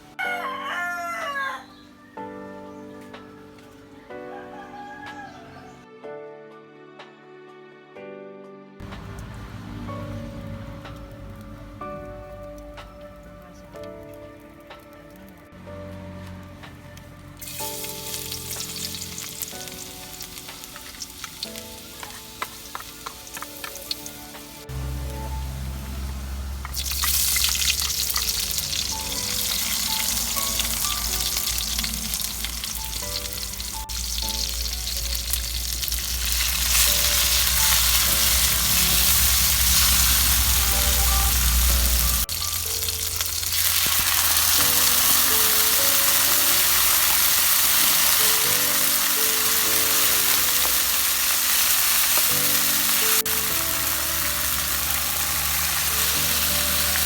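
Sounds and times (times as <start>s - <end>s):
light background music: 0.0s - 57.0s
vegetables sizzling in a pan: 17.4s - 57.0s.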